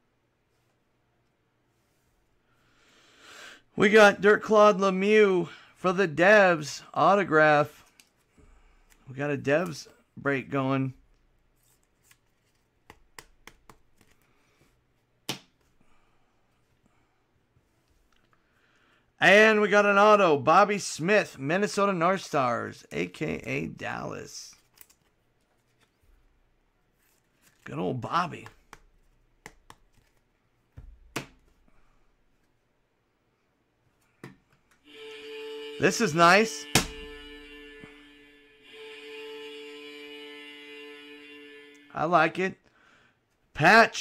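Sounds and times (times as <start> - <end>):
faint card rustling: 11.2 - 15.8, 24.5 - 32.6
trading cards clicking and snapping: 28.4 - 30.2.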